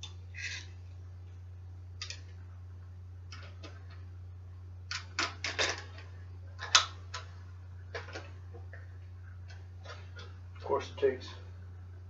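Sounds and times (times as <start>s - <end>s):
metal bicycle parts clicking: 0.0s - 0.7s.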